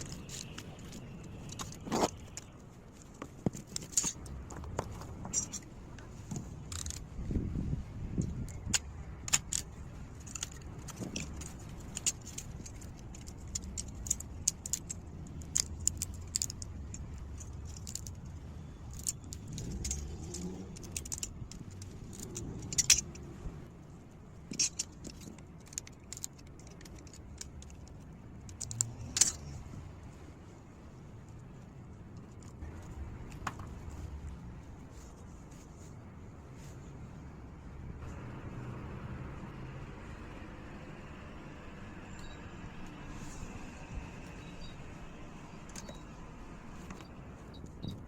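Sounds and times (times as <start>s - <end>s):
small metal pieces clinking: 0.0s - 5.7s, 6.4s - 7.2s, 8.2s - 23.2s, 24.4s - 29.7s.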